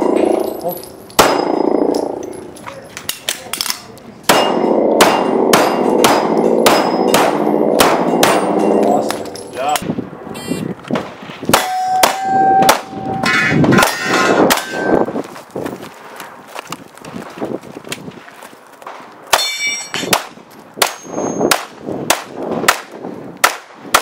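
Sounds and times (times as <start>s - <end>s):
steel targets ringing: 0.0s - 2.6s, 4.3s - 9.8s, 11.5s - 15.0s, 19.3s - 20.2s, 20.8s - 21.5s
pistol shots: 4.3s - 8.9s, 19.3s - 24.0s.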